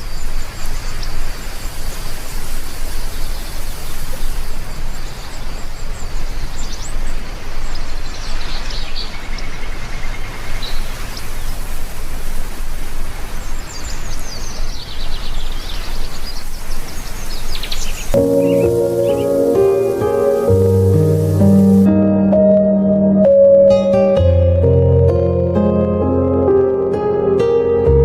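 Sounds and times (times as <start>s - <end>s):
heavy rain hiss: 0.0s - 6.7s, 10.4s - 21.9s
birds chirping: 13.4s - 26.6s
falling run of bird notes: 18.2s - 26.6s.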